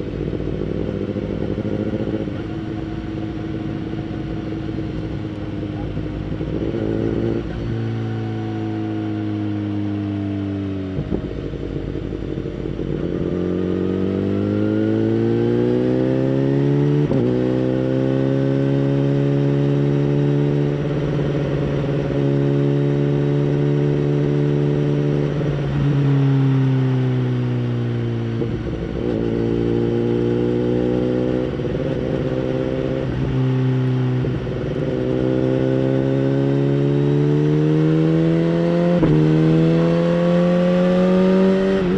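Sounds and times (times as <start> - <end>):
motorcycle engine revving: 0.0 - 41.9.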